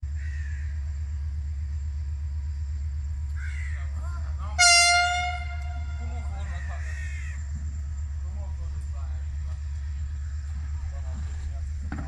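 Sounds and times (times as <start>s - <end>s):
steady low rumble: 0.0s - 12.0s
harsh cawing call: 0.1s - 0.8s, 3.4s - 4.0s, 4.6s - 7.6s
locomotive air horn blast: 4.5s - 6.7s.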